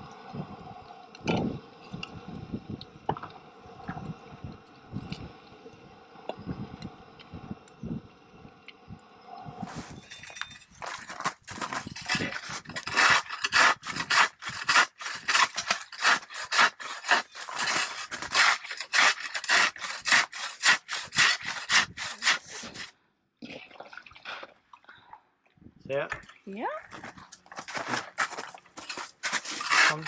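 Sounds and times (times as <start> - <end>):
hand saw rasping: 11.6 - 22.9, 28.9 - 30.0.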